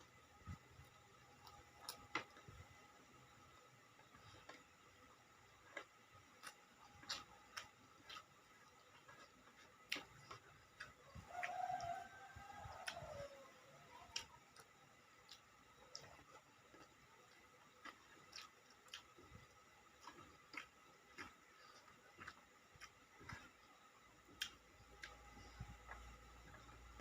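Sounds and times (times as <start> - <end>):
chewing clicks and smacks: 5.5 - 12.0, 14.0 - 27.0.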